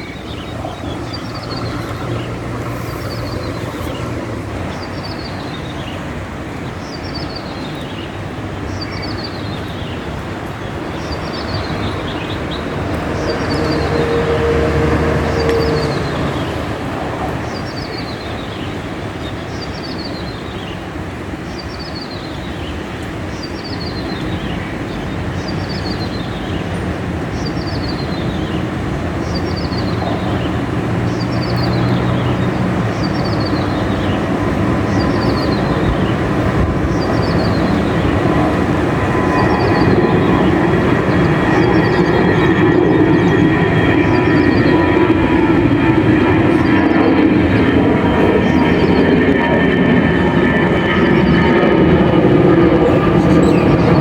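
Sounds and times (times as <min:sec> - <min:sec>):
distant songbird calling: 0:00.0 - 0:06.1, 0:27.4 - 0:54.0
wind noise: 0:00.0 - 0:21.4, 0:22.7 - 0:54.0.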